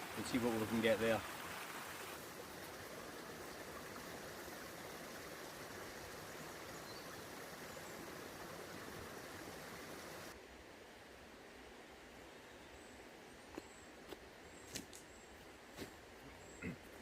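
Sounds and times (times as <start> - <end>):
small waterfall rushing: 0.0 - 10.4.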